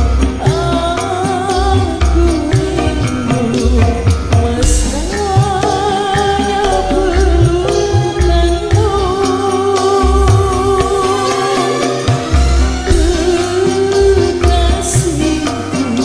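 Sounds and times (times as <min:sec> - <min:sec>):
wavering melody line: 0:04.4 - 0:09.7, 0:10.4 - 0:15.4
low drum hits: 0:04.6 - 0:07.7, 0:12.9 - 0:13.6.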